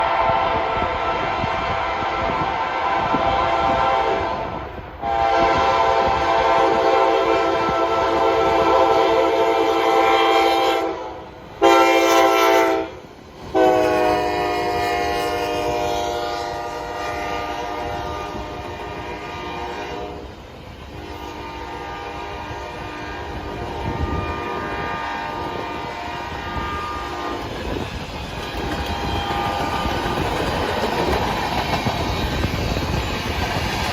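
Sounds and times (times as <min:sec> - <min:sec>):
locomotive air horn blasts: 0:00.0 - 0:20.3, 0:20.9 - 0:27.5, 0:28.6 - 0:29.9
freight cars rumbling and clacking: 0:27.4 - 0:33.9.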